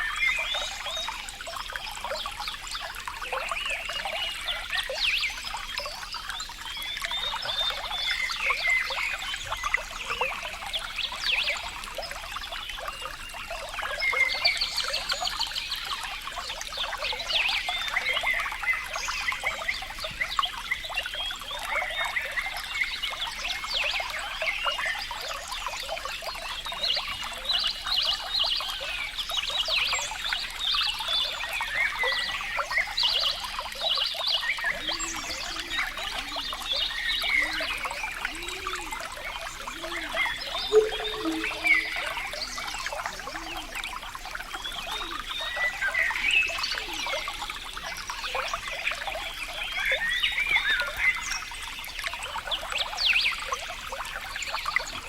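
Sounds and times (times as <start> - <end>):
water trickling: 0.0 - 55.0
low animal calls: 34.7 - 43.8
small animals chirping and trilling: 34.7 - 45.2.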